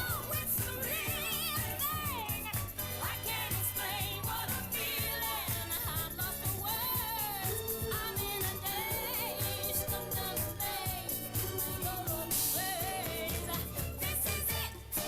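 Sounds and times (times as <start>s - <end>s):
soul song with band: 0.0s - 15.0s.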